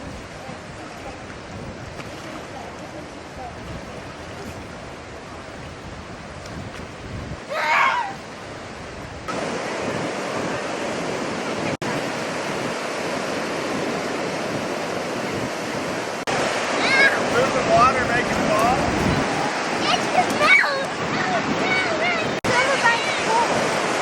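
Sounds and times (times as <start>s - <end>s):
ocean surf washing: 0.0s - 24.0s
wind on microphone: 0.0s - 24.0s.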